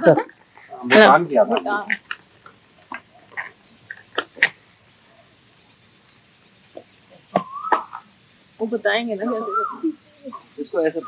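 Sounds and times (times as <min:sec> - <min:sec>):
birds calling: 0:00.0 - 0:11.0
faint high chirps: 0:00.0 - 0:11.0.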